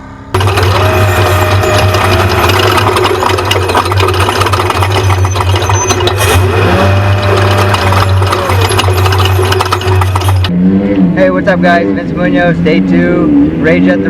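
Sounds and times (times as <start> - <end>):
truck engine running hard: 0.0 - 14.0
truck rattling over rough ground: 0.3 - 10.5.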